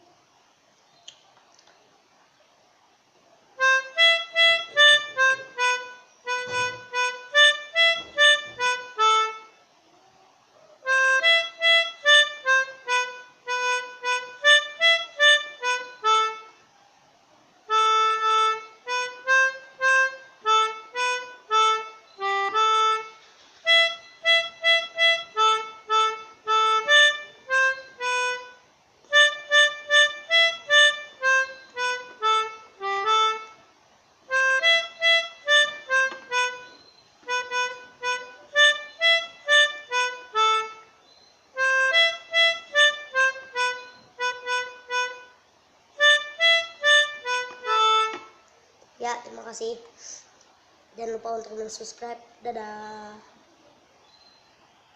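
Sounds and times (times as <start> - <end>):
melodica playing quick notes: 3.6 - 9.6, 10.9 - 16.6, 17.7 - 33.7, 34.3 - 41.0, 41.6 - 45.4, 46.0 - 48.4.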